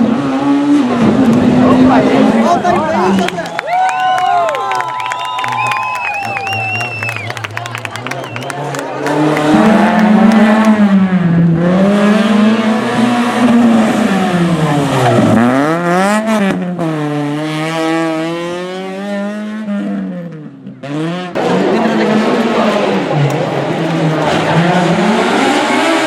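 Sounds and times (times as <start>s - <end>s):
rally car engine revving: 0.0s - 3.5s, 7.9s - 26.0s
rough noisy engine: 0.1s - 3.6s, 6.5s - 16.6s, 21.3s - 26.0s.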